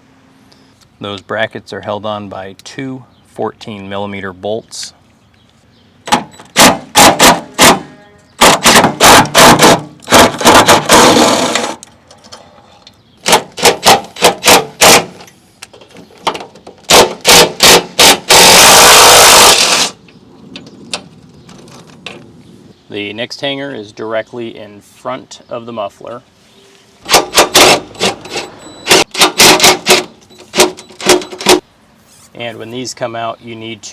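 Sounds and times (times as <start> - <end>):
power wrench bursts: 6.0 - 11.8, 13.2 - 15.3, 16.8 - 20.0, 27.0 - 31.6.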